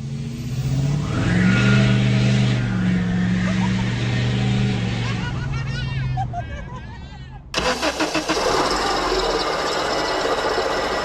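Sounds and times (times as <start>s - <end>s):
belt drive grinding: 7.6s - 11.0s
car engine running: 7.6s - 11.0s.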